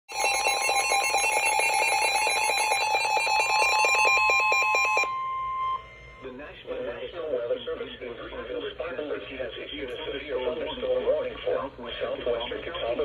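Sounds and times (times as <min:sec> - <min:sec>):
rapid beeping alarms: 0:00.1 - 0:06.3
steady warning tone: 0:00.1 - 0:07.1.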